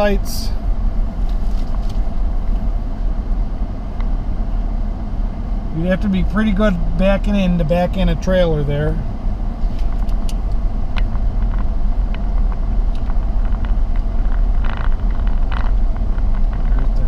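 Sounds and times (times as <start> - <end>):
engine and tyre rumble: 0.0 - 17.0
small knocks and rattles: 11.0 - 17.0.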